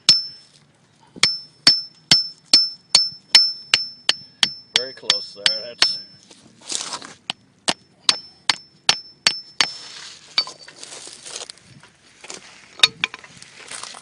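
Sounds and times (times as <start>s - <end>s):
hammer striking steel spike: 0.0s - 0.4s, 1.2s - 6.2s, 7.7s - 9.8s.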